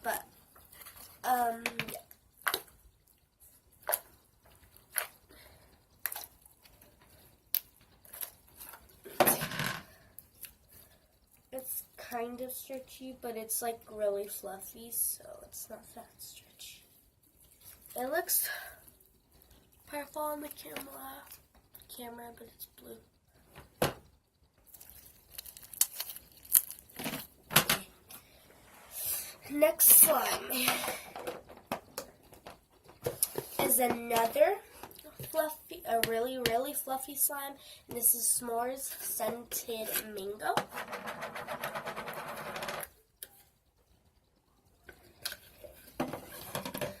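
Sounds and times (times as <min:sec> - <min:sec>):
slime crackling and tearing: 0:24.7 - 0:26.8.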